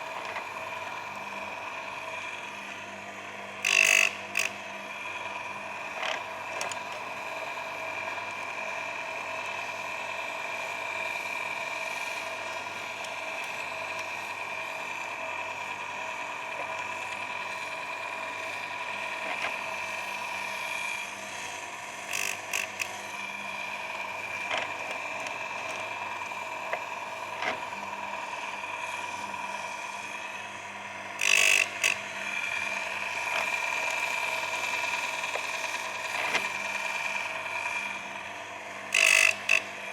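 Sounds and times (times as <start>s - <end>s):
grinding motor whining: 0.0s - 39.9s
harsh grind on metal: 22.1s - 23.0s, 38.9s - 39.6s.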